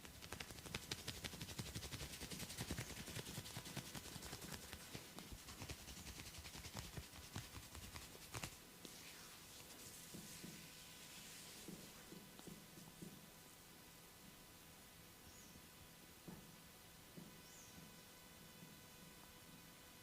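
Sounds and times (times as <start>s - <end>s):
hands tapping on skin: 0.0s - 8.6s.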